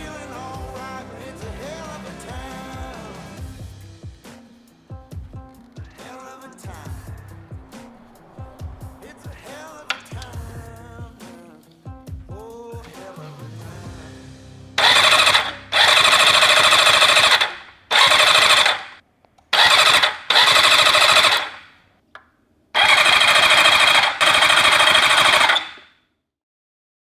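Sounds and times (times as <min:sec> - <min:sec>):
motorcycle engine cranking: 0:09.9 - 0:10.4, 0:14.8 - 0:21.7, 0:22.8 - 0:25.9.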